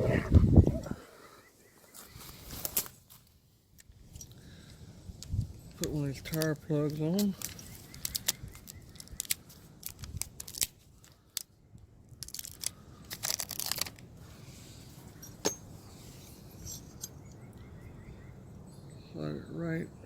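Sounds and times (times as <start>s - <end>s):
rubber plug rustling and tearing: 6.3s - 11.2s, 12.2s - 14.0s.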